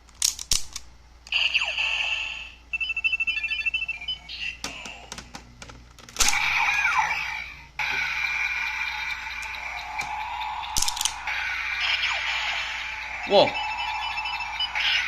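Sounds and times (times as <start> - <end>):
electronic tone falling glide: 8.0 - 15.0
electronic beep tune: 9.1 - 15.0
toy chiming tone: 13.2 - 15.0.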